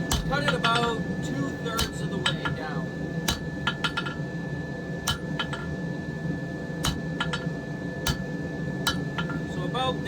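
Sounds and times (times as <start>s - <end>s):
hammer striking chisel on iron: 0.0s - 1.0s, 1.8s - 2.6s, 3.3s - 4.2s, 5.0s - 5.7s, 6.8s - 9.4s
steady hum: 0.0s - 10.0s.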